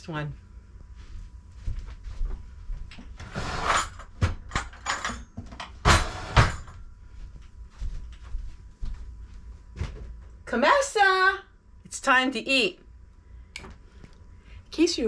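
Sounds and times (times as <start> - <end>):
household knocks and clatters: 3.2 - 6.8.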